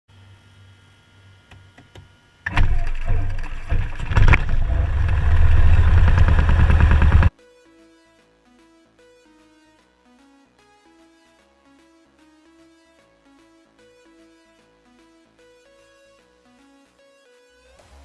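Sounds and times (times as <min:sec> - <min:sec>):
plane piston engine starting: 0:02.5 - 0:07.3.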